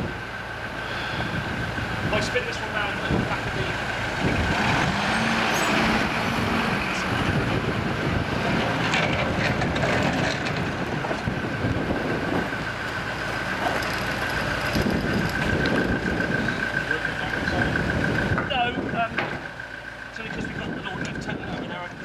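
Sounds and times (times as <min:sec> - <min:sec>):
vehicle engine whining: 0:00.0 - 0:22.0
metallic clanks and rattles: 0:08.5 - 0:11.3.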